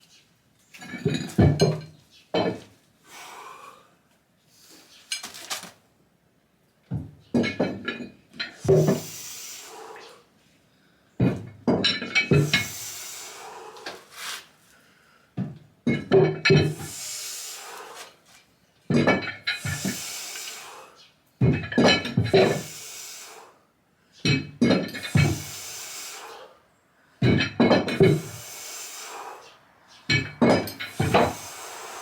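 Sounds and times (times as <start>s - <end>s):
weights clanking and clinking: 0.8s - 2.6s, 11.2s - 12.9s, 30.0s - 31.9s
hissing sounds: 8.6s - 10.1s, 28.0s - 29.6s.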